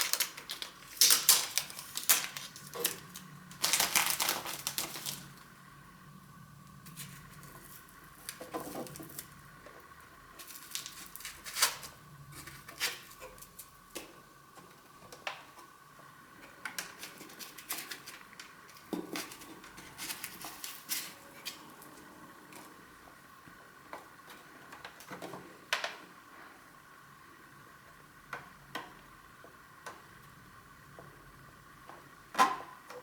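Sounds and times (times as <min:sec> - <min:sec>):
packaging rustling: 0:00.0 - 0:05.4, 0:10.4 - 0:13.5, 0:16.9 - 0:21.7.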